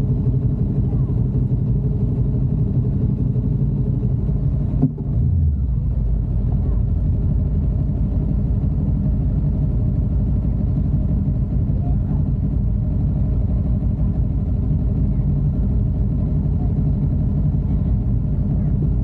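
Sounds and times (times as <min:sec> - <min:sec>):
vehicle engine and road rumble: 0:00.0 - 0:19.0.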